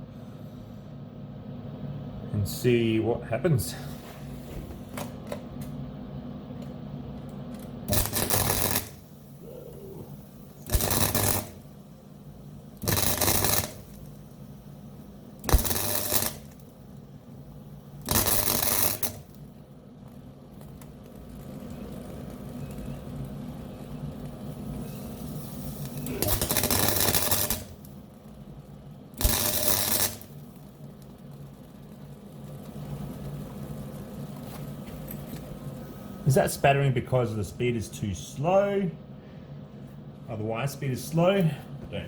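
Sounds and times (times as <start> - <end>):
steady low hum: 0.0 - 42.0
welder arcs crackling: 6.6 - 38.8.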